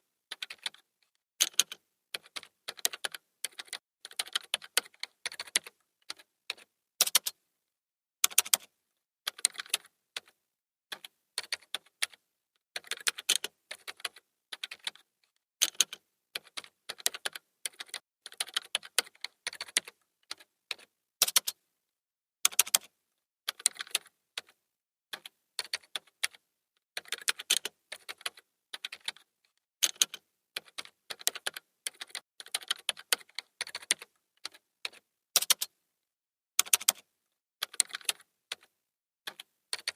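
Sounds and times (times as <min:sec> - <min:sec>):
computer keyboard typing: 0:00.3 - 0:07.4, 0:08.2 - 0:08.7, 0:09.3 - 0:12.2, 0:12.8 - 0:21.6, 0:22.5 - 0:22.9, 0:23.5 - 0:26.4, 0:27.0 - 0:35.7, 0:36.6 - 0:38.7, 0:39.3 - 0:39.9.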